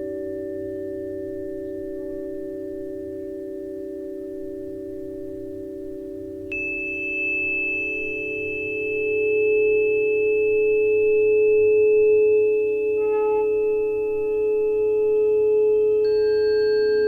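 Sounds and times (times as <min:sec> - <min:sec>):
steady pure tones: 0:06.5 - 0:17.0.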